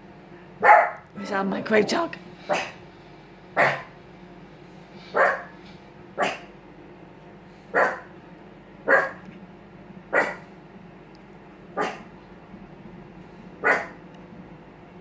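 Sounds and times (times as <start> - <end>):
dog barking: 0.6 - 1.1, 2.5 - 2.8, 3.6 - 3.9, 5.1 - 5.6, 6.2 - 6.5, 7.7 - 8.1, 8.9 - 9.2, 10.1 - 10.5, 11.8 - 12.1, 13.6 - 14.0.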